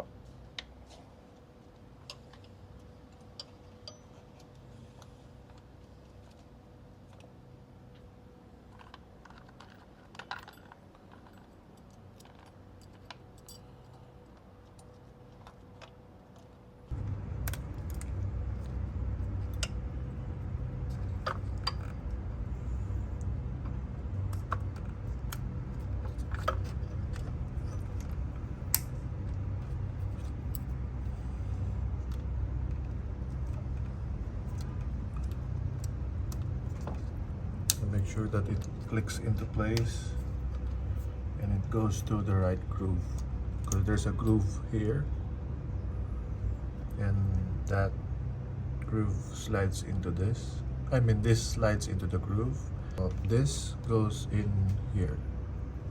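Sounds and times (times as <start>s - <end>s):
steady low rumble: 11.4s - 55.9s.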